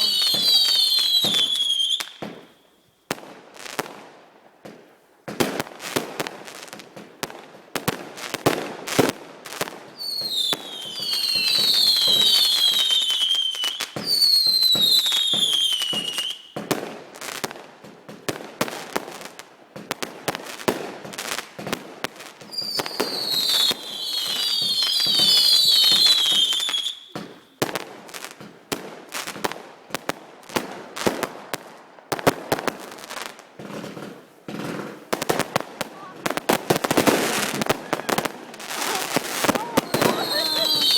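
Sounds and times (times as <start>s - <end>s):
whistling fireworks: 0.0s - 4.0s, 7.8s - 40.9s
fireworks cracking and popping: 0.0s - 40.9s.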